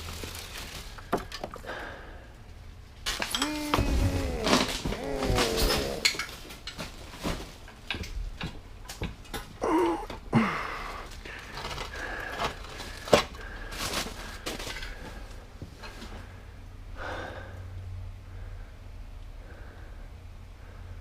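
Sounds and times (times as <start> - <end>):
objects being handled: 3.0 - 10.1.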